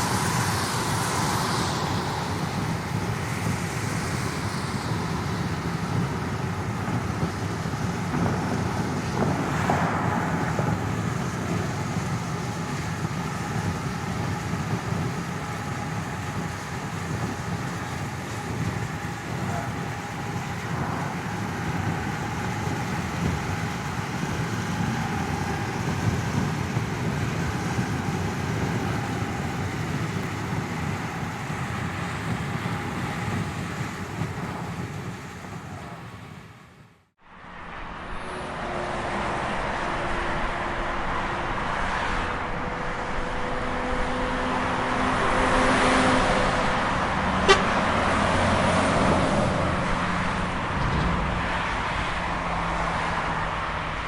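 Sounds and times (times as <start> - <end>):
street traffic: 0.0 - 54.0
vehicle noise: 0.0 - 54.0
car horns: 47.4 - 47.8.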